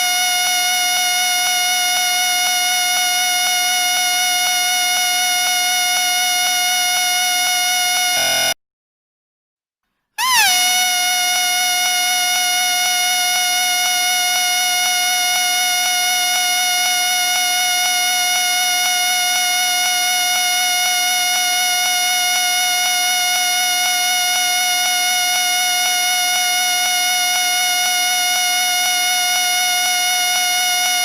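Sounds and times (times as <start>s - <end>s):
shrill whistle held note: 8.1s - 8.6s, 10.2s - 13.4s.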